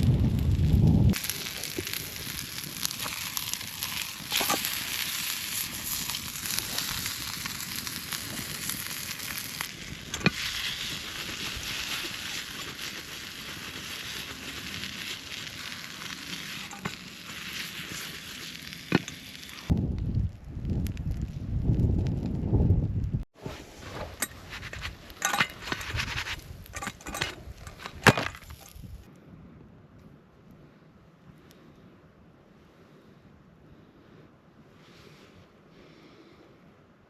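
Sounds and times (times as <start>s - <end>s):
food sizzling in a frying pan: 0.0s - 19.7s.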